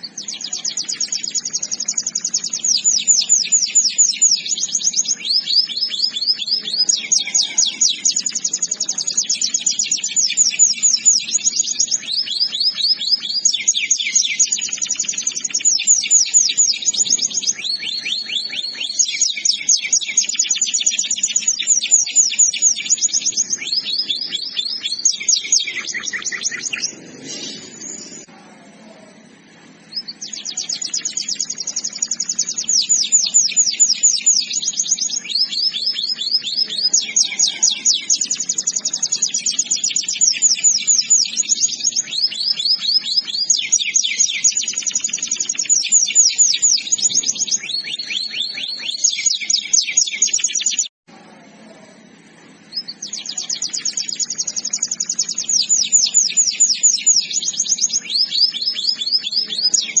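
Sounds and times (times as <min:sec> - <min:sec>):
canary singing trills: 0:00.0 - 1:00.0.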